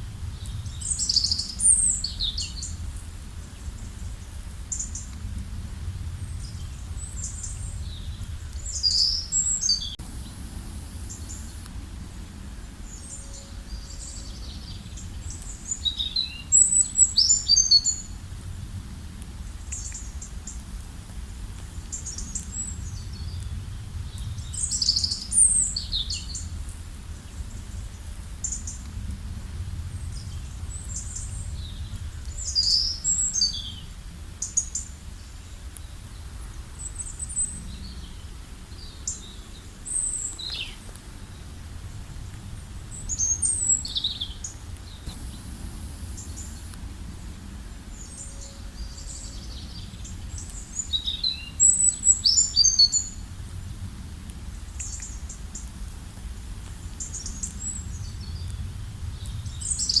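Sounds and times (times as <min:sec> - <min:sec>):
small birds chirping: 0:00.3 - 0:05.2, 0:06.2 - 0:18.2, 0:30.0 - 0:42.0
low rumble: 0:40.8 - 0:50.4.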